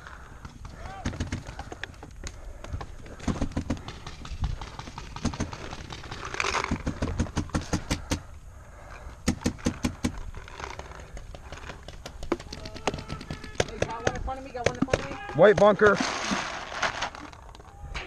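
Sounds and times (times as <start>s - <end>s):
paintball marker rapid shots: 3.2s - 8.2s.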